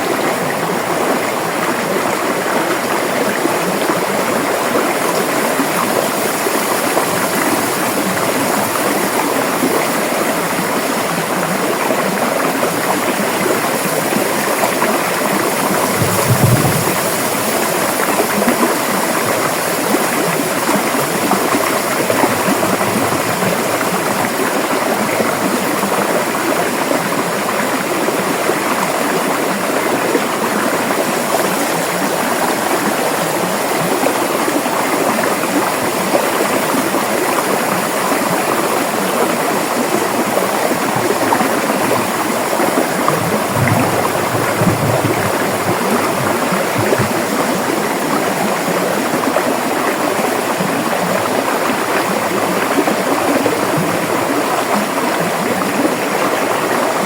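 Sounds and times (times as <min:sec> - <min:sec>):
river water flowing: 0:00.0 - 0:57.0.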